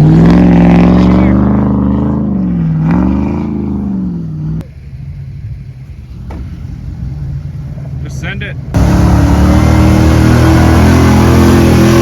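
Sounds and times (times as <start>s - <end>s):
truck engine revving: 0.0s - 4.7s, 8.7s - 12.0s
low engine rumble: 0.0s - 11.9s.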